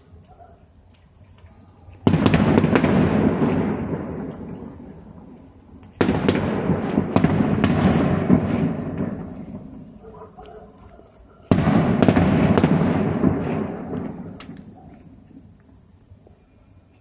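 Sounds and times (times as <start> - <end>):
fireworks crackling: 0.0 - 16.4
fireworks bursts: 1.9 - 15.9.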